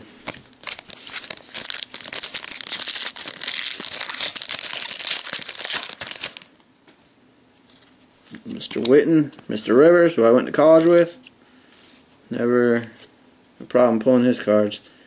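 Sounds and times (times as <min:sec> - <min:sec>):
foil wrapper tearing and crinkling: 0:00.3 - 0:06.5.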